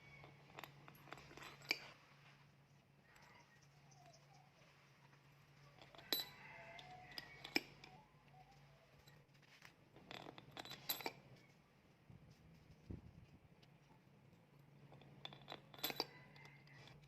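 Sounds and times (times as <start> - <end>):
small steel parts clinking: 0.0 - 2.0, 5.6 - 8.0, 10.0 - 11.6, 14.8 - 17.0.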